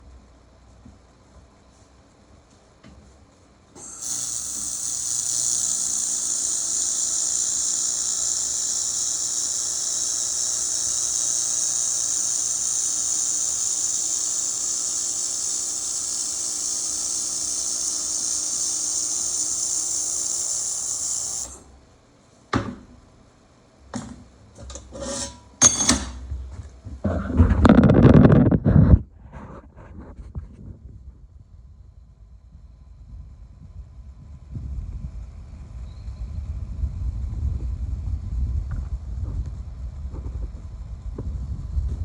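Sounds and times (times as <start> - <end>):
laser welder hissing: 3.8 - 21.8.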